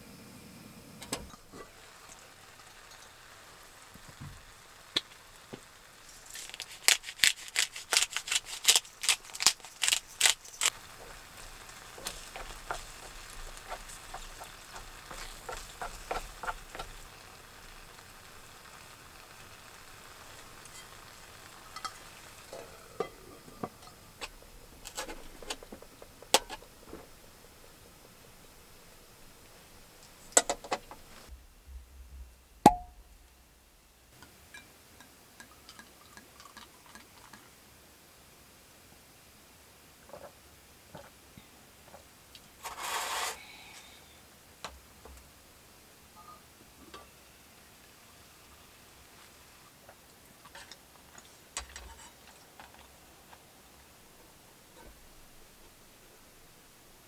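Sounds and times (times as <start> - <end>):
utensil scraping a pan: 6.1 - 17.1, 42.6 - 43.5.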